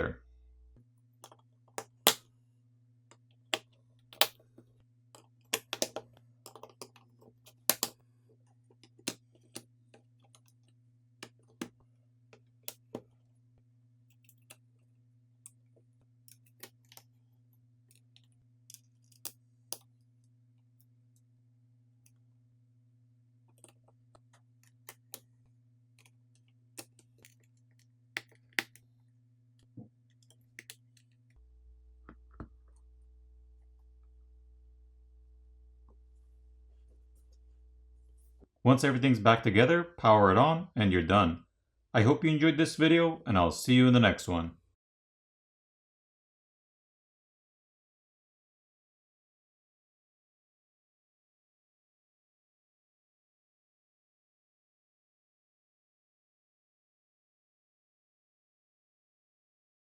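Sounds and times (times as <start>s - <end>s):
faint low hum: 0.0s - 41.4s
small tools clicking and tapping: 5.2s - 10.6s, 14.1s - 14.6s, 16.2s - 17.1s, 23.6s - 25.3s, 26.0s - 28.8s, 30.1s - 31.3s.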